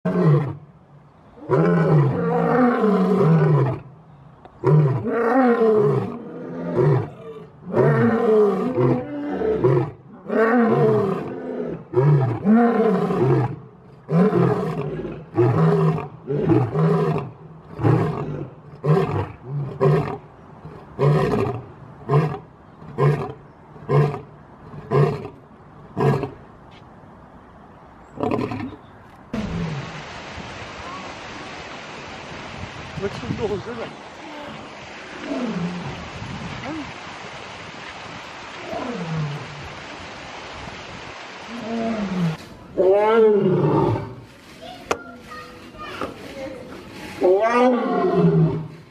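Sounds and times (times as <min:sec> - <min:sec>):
lion roaring: 0:01.4 - 0:03.8, 0:41.5 - 0:44.2, 0:47.1 - 0:48.7
lion grunting roars: 0:47.2 - 0:48.7.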